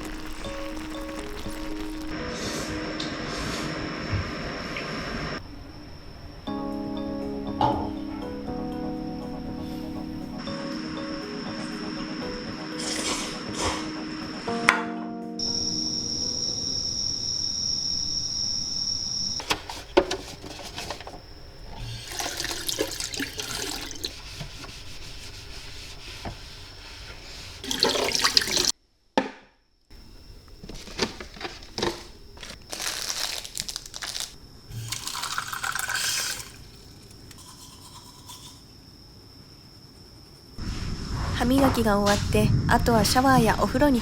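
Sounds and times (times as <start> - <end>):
tap water running into sink: 0.0 - 2.2, 21.8 - 24.9, 27.4 - 28.7, 34.8 - 36.6.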